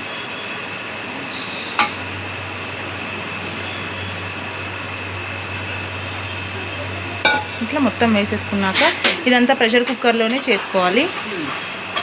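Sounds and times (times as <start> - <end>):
low hum: 1.0 - 9.6
utensil clinking metal pot: 7.2 - 7.6.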